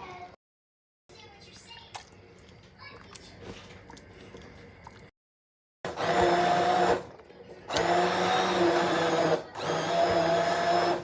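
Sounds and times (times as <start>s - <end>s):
electric blender motor whine: 5.9s - 7.1s, 7.7s - 11.0s.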